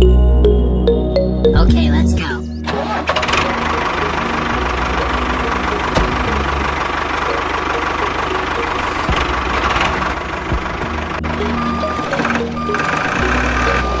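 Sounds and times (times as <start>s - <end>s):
engine chugging: 2.6s - 14.0s.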